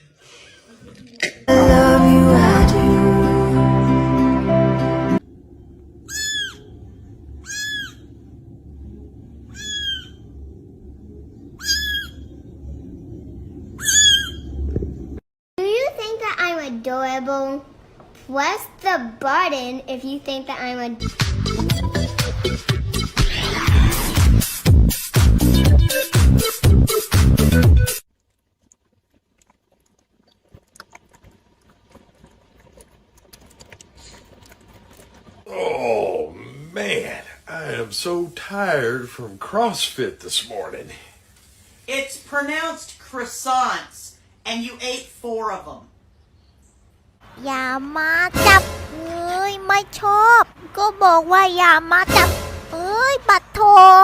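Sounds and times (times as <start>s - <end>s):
electronic dance music: 1.5s - 5.2s, 48.4s - 49.0s
small animal high-pitched cries: 6.1s - 6.7s, 7.4s - 8.0s, 9.5s - 10.2s, 11.6s - 12.2s
low rustle: 36.9s - 42.3s.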